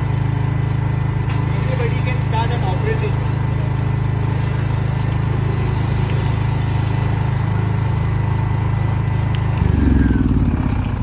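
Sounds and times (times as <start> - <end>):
generator engine hum: 0.0 - 11.0.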